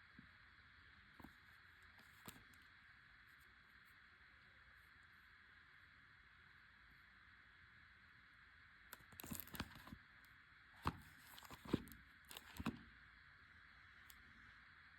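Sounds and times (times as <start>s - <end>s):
faint steady hiss: 0.0s - 14.9s
packaging crinkling and clicking: 9.0s - 10.0s, 10.8s - 12.8s.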